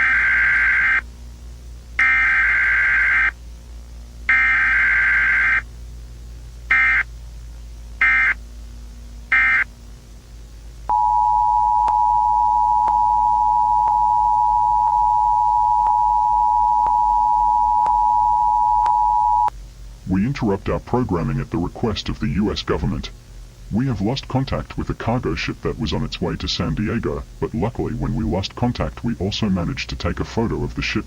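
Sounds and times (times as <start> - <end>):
two-tone attention signal: 10.9 - 19.5.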